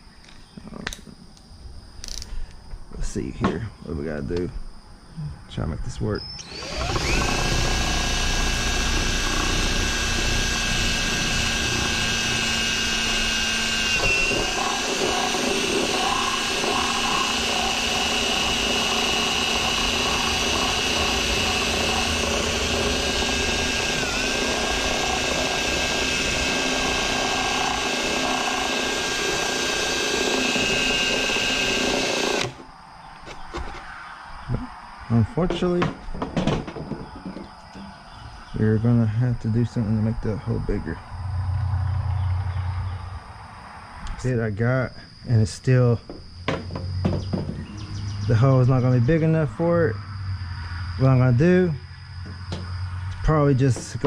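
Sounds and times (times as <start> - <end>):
electric drill boring: 6.3 - 32.7.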